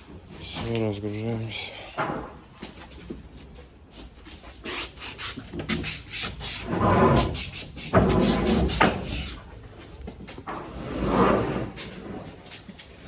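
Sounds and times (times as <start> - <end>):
cargo scraping: 4.3 - 13.0.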